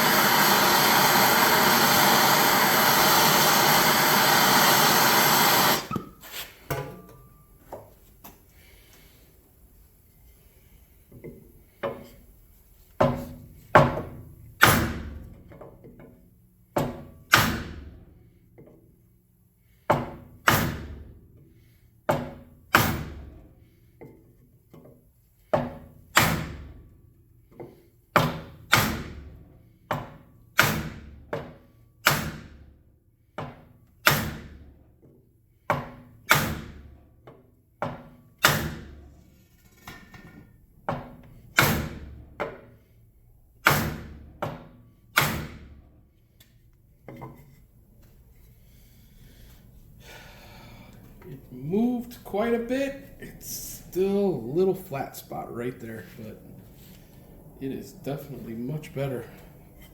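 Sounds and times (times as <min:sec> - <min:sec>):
hard whacks on metal wheel rim: 0:13.8 - 0:15.2, 0:16.8 - 0:17.9, 0:20.0 - 0:21.0, 0:22.2 - 0:23.3, 0:25.6 - 0:26.7, 0:28.2 - 0:29.2, 0:29.9 - 0:32.6, 0:34.0 - 0:34.7, 0:35.7 - 0:36.9, 0:37.9 - 0:39.0, 0:41.0 - 0:42.6, 0:43.6 - 0:45.8.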